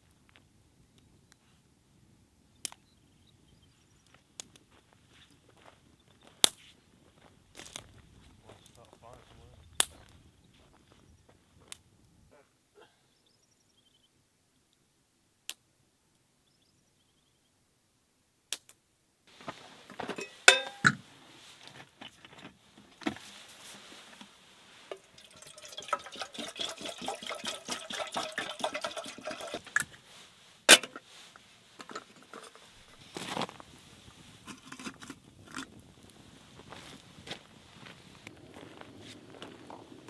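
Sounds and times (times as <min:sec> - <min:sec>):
cookware clinking and knocking: 0:20.1 - 0:21.0, 0:30.7 - 0:31.0
liquid pouring into container: 0:24.9 - 0:29.9.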